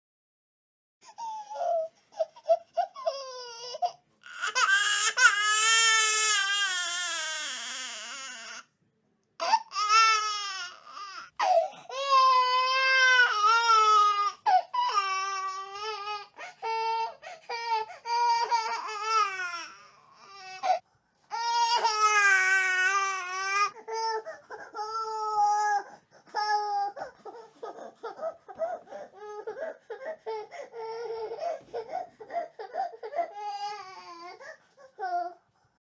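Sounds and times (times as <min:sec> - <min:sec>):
infant crying: 0:01.0 - 0:08.7, 0:09.4 - 0:35.4.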